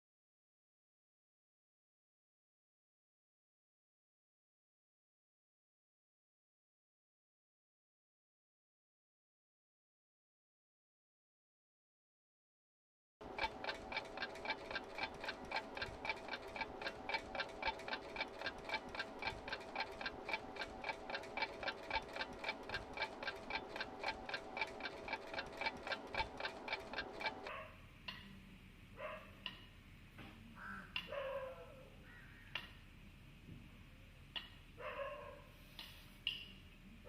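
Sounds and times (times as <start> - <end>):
fast ringing ticks: 13.2 - 27.5.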